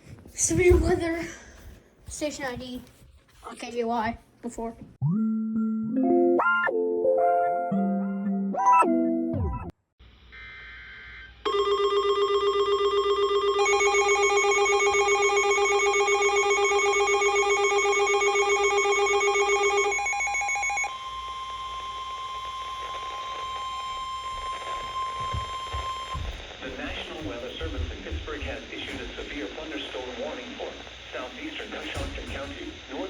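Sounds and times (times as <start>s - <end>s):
pulsing electronic alarm tone: 10.7s - 27.8s.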